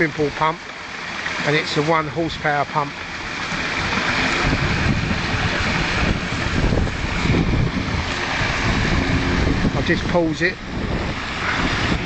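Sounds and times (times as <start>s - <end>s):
water splashing over rocks: 0.0s - 12.0s
wind buffeting microphone: 2.0s - 12.0s.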